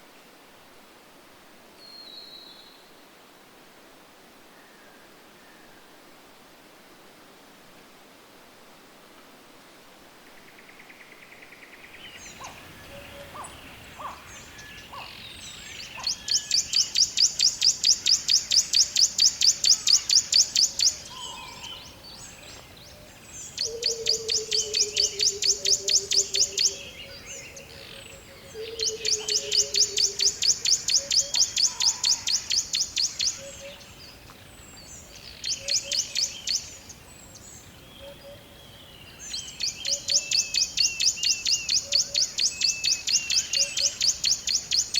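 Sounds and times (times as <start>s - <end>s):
soft bird chirps: 10.4s - 44.9s.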